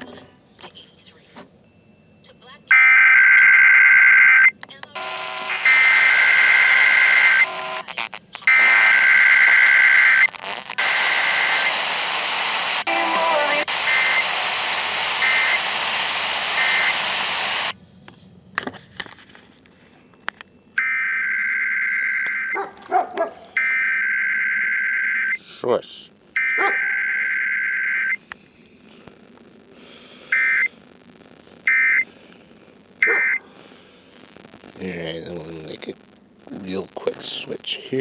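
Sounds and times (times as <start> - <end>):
buzzing two-tone data bursts: 5.0 - 14.4, 15.2 - 17.7
loud hissing noise: 8.8 - 17.8.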